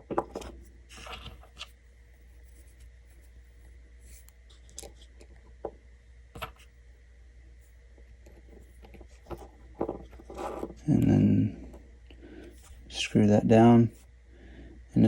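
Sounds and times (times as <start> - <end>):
faint scratching of lock parts: 0.1 - 5.4, 8.2 - 11.8.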